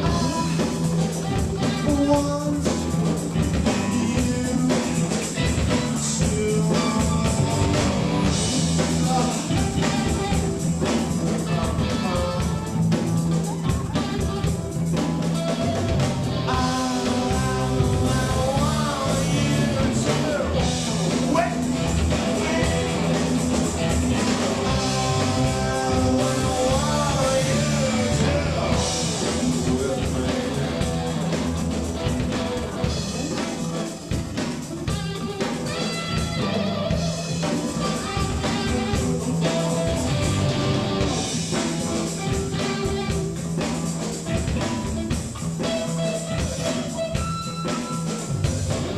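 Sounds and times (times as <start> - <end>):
person singing: 0.0 - 14.5, 16.4 - 31.4
accompanying instruments: 0.0 - 48.9.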